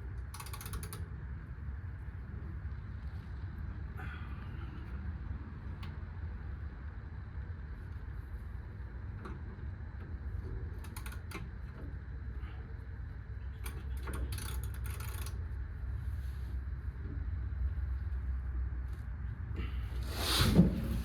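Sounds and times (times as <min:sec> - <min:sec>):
steady low hum: 0:00.0 - 0:21.0.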